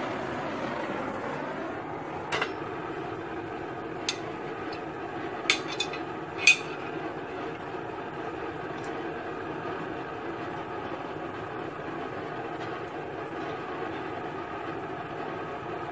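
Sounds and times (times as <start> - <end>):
steel pieces clinking: 5.5 - 6.8.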